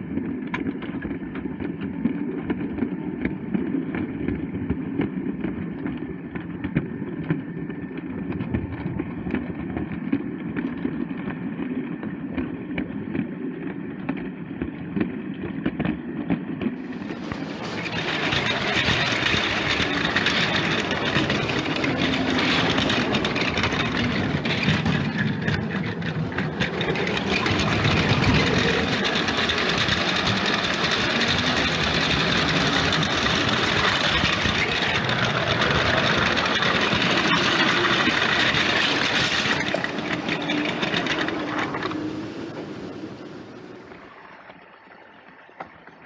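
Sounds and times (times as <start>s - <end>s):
toy train wheels clattering: 16.9s - 43.9s.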